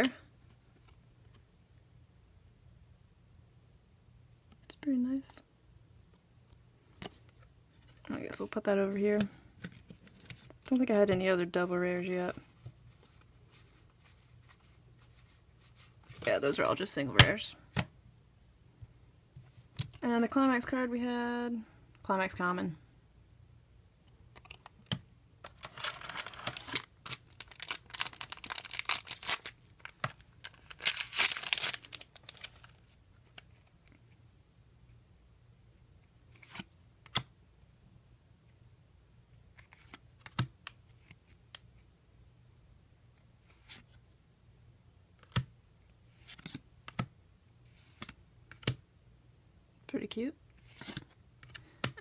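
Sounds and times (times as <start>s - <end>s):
cards clicking and tapping: 24.3s - 25.6s, 48.0s - 48.8s
foil pack crinkling and tearing: 25.6s - 32.8s.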